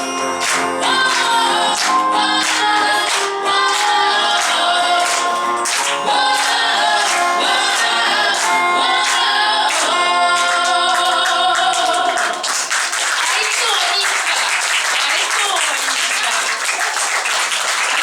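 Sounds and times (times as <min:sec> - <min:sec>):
song with singing over a beat: 0:00.0 - 0:12.7.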